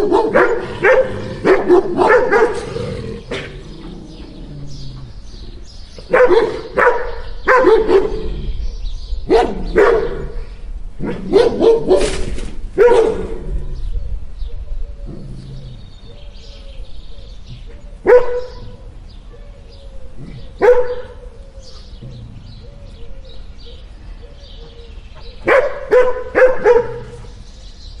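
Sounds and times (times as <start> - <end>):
dogs barking: 0.0 - 3.8, 6.0 - 8.4, 9.2 - 10.4, 11.0 - 13.6, 17.3 - 19.6, 20.2 - 23.9, 24.5 - 27.4.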